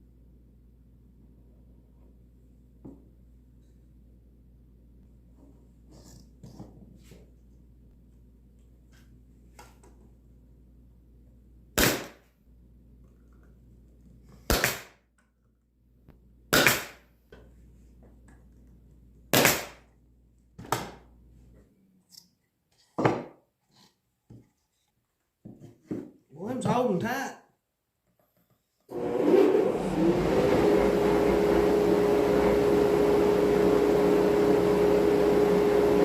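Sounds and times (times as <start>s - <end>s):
stapler firing into wood: 11.8s - 12.2s, 14.5s - 15.0s, 16.5s - 17.0s, 19.3s - 19.8s.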